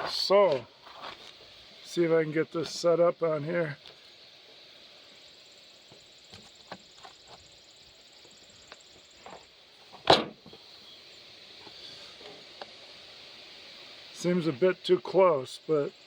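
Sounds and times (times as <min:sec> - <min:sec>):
loud sharp knock: 0:10.0 - 0:10.4.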